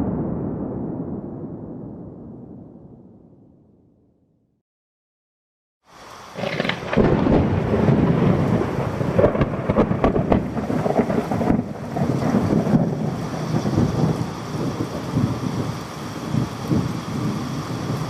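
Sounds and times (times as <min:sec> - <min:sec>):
thunder rumbling: 0:00.0 - 0:03.9, 0:06.3 - 0:18.0
heavy rain: 0:05.9 - 0:18.0.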